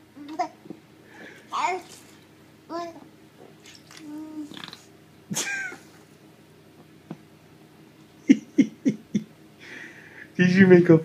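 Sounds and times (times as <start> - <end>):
baby farting: 3.6 - 4.9.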